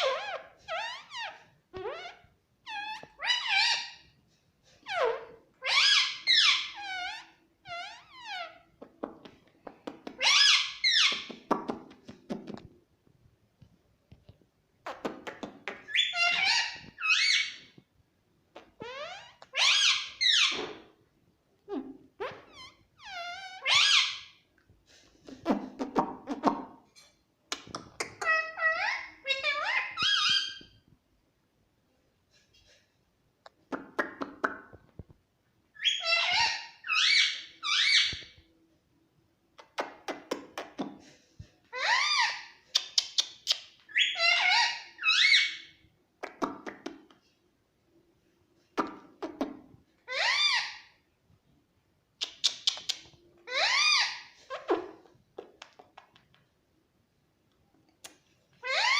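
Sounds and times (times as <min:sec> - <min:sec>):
parrot calling: 0:00.0 - 0:04.0, 0:04.8 - 0:08.6, 0:10.2 - 0:11.4, 0:15.9 - 0:17.7, 0:18.6 - 0:20.9, 0:22.2 - 0:24.4, 0:28.2 - 0:30.8, 0:35.8 - 0:38.3, 0:41.7 - 0:45.7, 0:50.0 - 0:51.0, 0:52.2 - 0:55.0, 0:58.6 - 0:58.9
parrot warbling calls: 0:35.8 - 0:38.2, 0:43.9 - 0:45.6, 0:50.1 - 0:50.9, 0:58.6 - 0:58.9.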